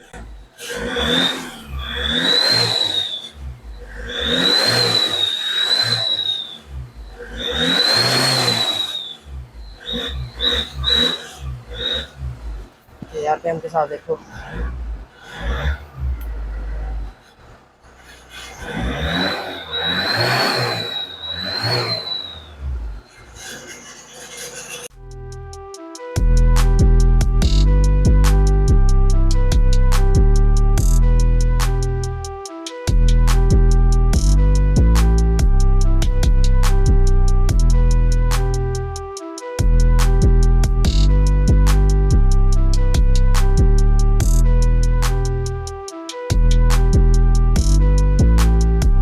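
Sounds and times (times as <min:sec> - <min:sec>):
engine revving: 0:00.0 - 0:49.0
exhaust whistle: 0:00.0 - 0:49.0
music: 0:24.9 - 0:49.0.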